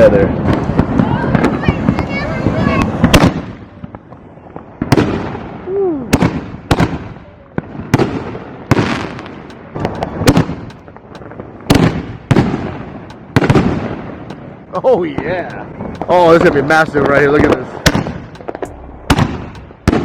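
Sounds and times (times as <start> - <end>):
fireworks bangs: 0.0 - 20.0.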